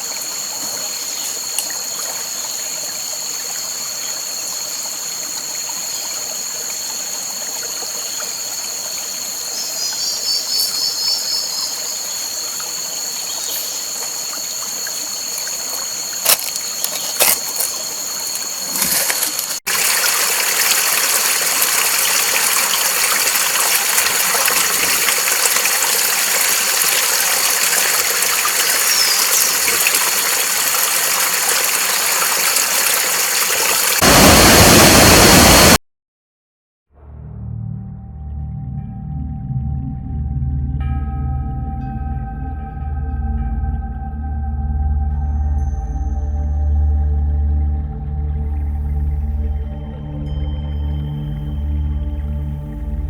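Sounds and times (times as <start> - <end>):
rushing water: 0.0 - 35.8.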